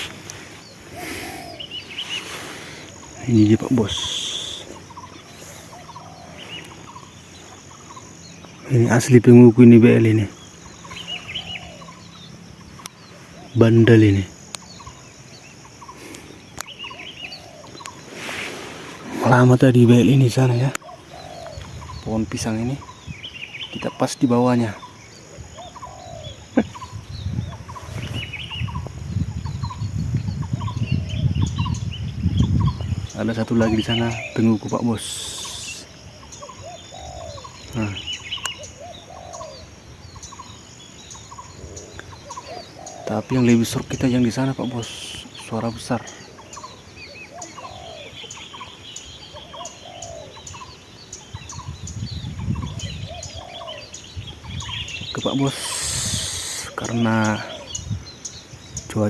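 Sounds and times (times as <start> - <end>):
dove cooing: 0.0 - 7.6, 16.7 - 21.9, 25.2 - 28.8, 33.5 - 39.7, 41.2 - 43.7, 46.0 - 48.4, 49.3 - 50.7
doves cooing: 0.0 - 59.0
small birds chirping: 0.0 - 59.0
low wind rumble: 19.0 - 23.6, 24.8 - 44.2, 50.5 - 56.8, 57.5 - 59.0.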